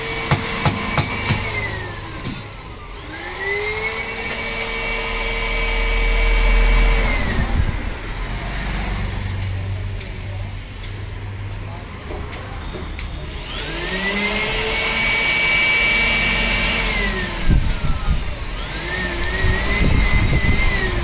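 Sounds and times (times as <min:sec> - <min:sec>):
small electric motor whining: 0:00.9 - 0:08.4, 0:13.3 - 0:21.0
sharp clicks: 0:12.3 - 0:14.1.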